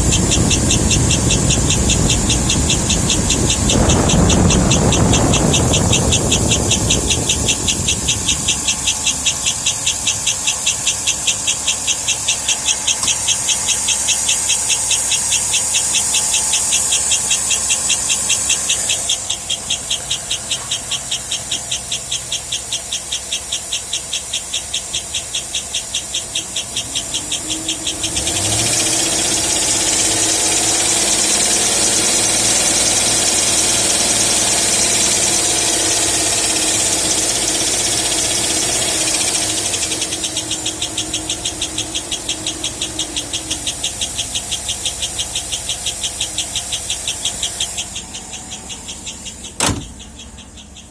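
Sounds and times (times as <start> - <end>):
high-pitched chirping: 0.0 - 13.9, 39.5 - 50.9
car engine running: 0.0 - 50.9.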